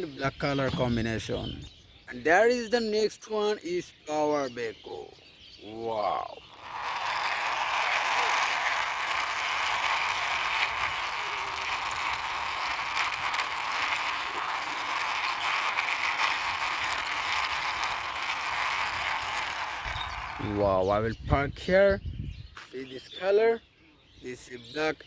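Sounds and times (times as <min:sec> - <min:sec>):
toy wheels and gears clicking rattle: 0:05.7 - 0:20.9.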